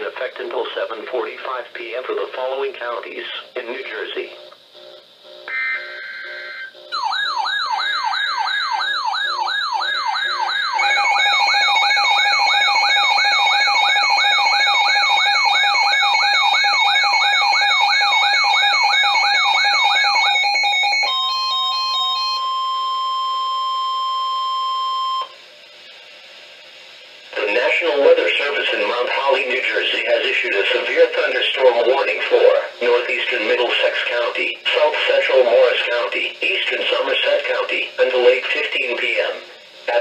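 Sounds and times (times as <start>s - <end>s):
steady alarm tones: 3.3s - 25.4s, 27.3s - 40.0s
warbling siren-like tone: 5.5s - 21.7s.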